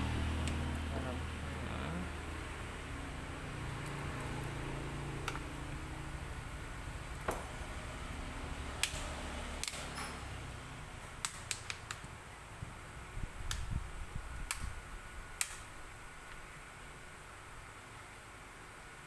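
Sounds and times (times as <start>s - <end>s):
low steady hum: 0.0s - 19.0s
sharp clicks and taps: 5.2s - 5.4s.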